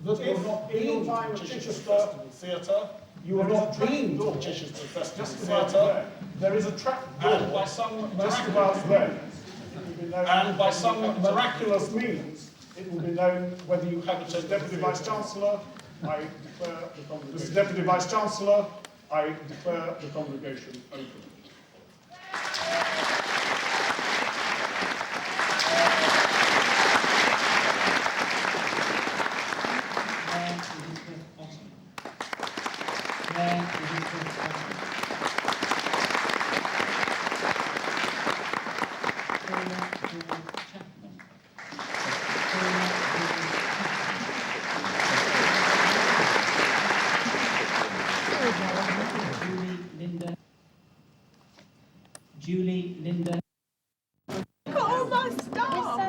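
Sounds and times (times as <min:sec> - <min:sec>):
audience applauding: 0:22.1 - 0:31.1, 0:32.0 - 0:40.8, 0:41.6 - 0:49.8.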